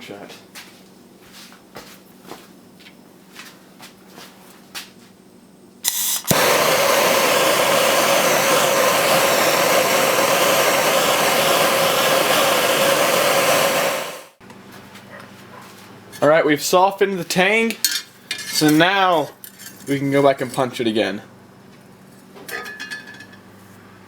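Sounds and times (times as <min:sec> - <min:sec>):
gas torch hissing: 0:05.8 - 0:14.4.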